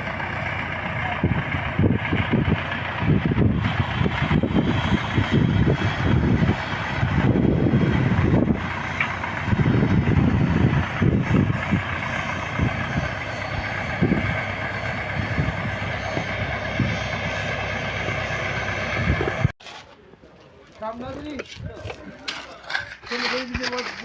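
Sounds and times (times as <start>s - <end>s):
heavy truck engine rumbling: 0.0s - 19.6s.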